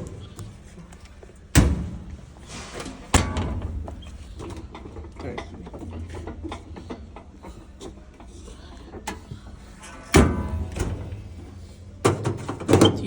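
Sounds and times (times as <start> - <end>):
heavy thud with ringing: 3.2 - 4.6
washing machine door click: 10.1 - 11.3.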